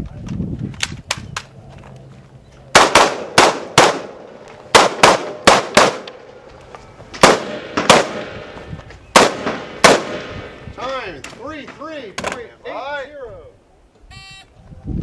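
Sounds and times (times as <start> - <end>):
gunshots in quick pairs: 2.7 - 6.1, 7.2 - 8.5, 9.1 - 10.6.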